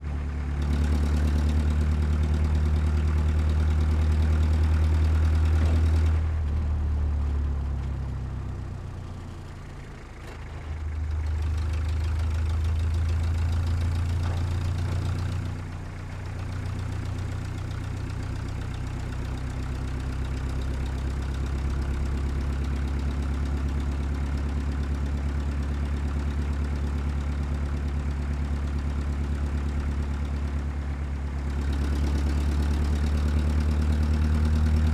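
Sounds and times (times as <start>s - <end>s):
heavy truck engine running: 0.0s - 34.9s.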